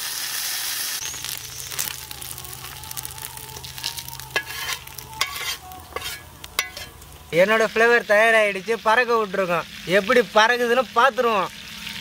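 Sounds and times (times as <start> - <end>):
meat frying in oil: 0.0 - 12.0
oil popping: 1.0 - 7.3.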